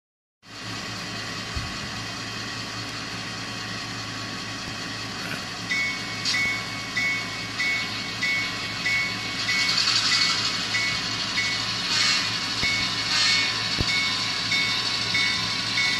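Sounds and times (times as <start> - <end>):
diesel engine idling hum: 0.5 - 15.9
locomotive bell ringing: 4.8 - 15.9.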